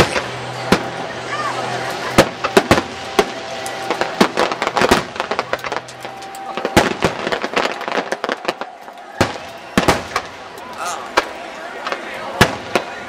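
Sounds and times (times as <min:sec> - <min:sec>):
fireworks crackling pops: 0:00.0 - 0:01.0, 0:01.8 - 0:13.0
loud firework bang: 0:00.0 - 0:01.0, 0:02.0 - 0:10.4, 0:12.4 - 0:13.0.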